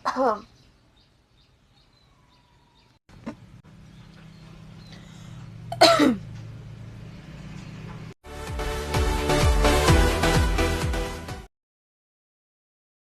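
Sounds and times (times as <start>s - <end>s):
person coughing: 5.7s - 6.2s
music: 8.2s - 11.5s.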